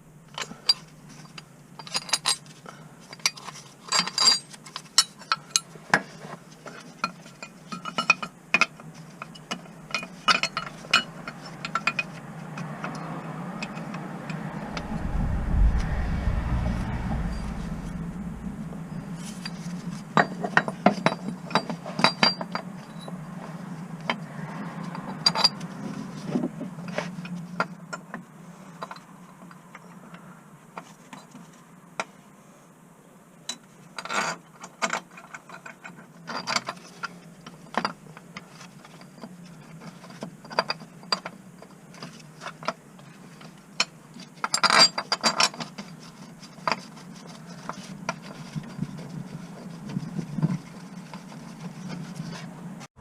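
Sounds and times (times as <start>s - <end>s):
steady low hum: 14.0s - 20.3s.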